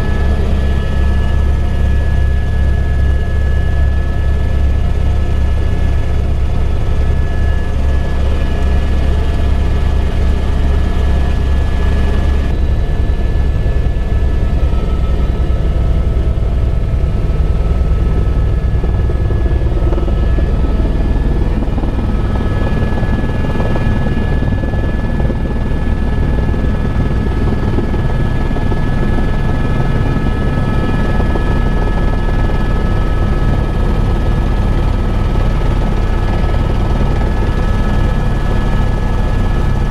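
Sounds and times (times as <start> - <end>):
helicopter rotor and engine rumble: 0.0 - 39.9
high turbine whine: 0.0 - 39.9.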